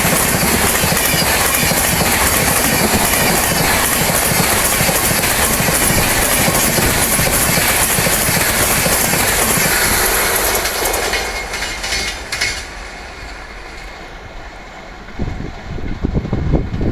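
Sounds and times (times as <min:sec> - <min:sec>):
wheels clattering over rail joints: 0:00.0 - 0:14.1
train wheels rushing on rail: 0:00.0 - 0:16.9.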